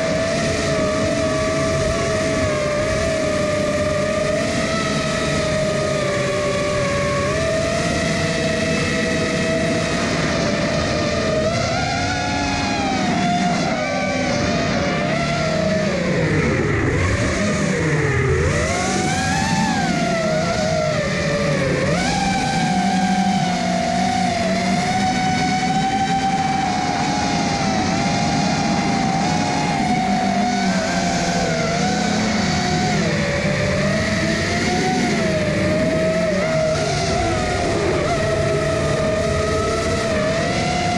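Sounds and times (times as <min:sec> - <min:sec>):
quadcopter motors whining: 0:00.0 - 0:40.9.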